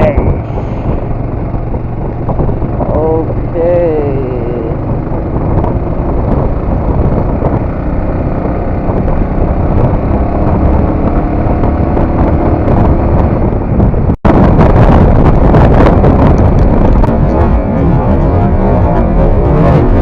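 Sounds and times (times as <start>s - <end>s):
motorcycle engine running: 0.0s - 20.0s
wind on microphone: 0.0s - 20.0s.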